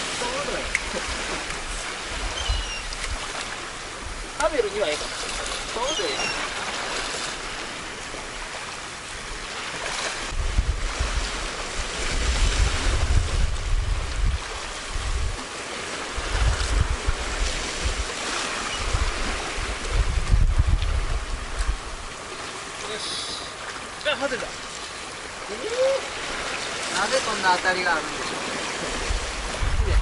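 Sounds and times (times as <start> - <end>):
wind gusting over microphone: 0.0 - 8.4, 9.0 - 22.8, 25.3 - 30.0
sea waves washing against rocks: 0.0 - 30.0.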